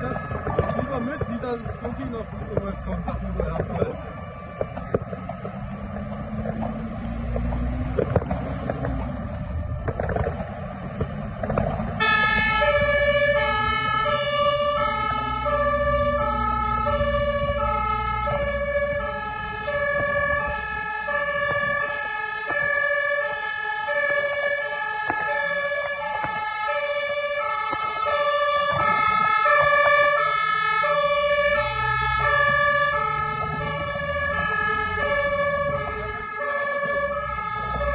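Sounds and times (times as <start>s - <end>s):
two-tone siren: 0.0s - 37.9s
diesel engine running: 1.7s - 21.8s.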